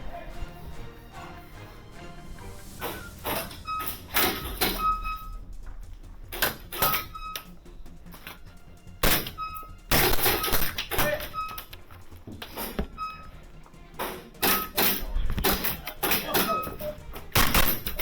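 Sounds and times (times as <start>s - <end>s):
background music: 0.0s - 18.0s
airsoft gunfire: 9.0s - 11.1s, 17.3s - 18.0s.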